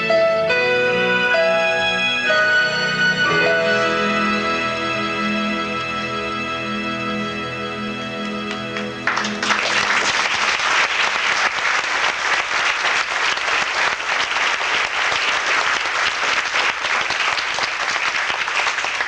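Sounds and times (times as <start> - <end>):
music chord: 0.0 - 10.2
audience applauding: 8.2 - 19.0.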